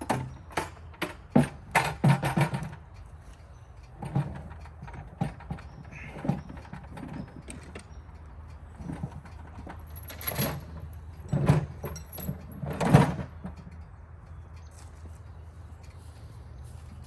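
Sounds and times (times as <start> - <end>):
metal clanking and rattling: 0.0 - 8.0, 8.7 - 13.8
low engine hum: 0.0 - 17.0.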